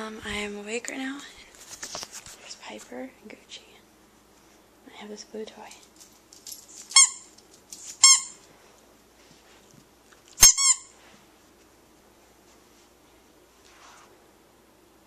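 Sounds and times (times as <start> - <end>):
squeaky dog toy squeaks: 6.9 - 7.3, 8.0 - 8.4, 10.4 - 11.0.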